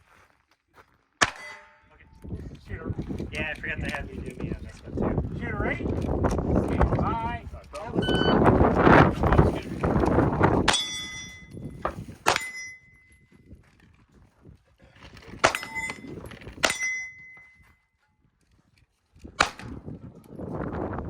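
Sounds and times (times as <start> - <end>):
bullets clanging on steel targets: 1.2 - 2.0, 10.7 - 13.2, 15.4 - 17.6
pistol shots: 19.4 - 19.8.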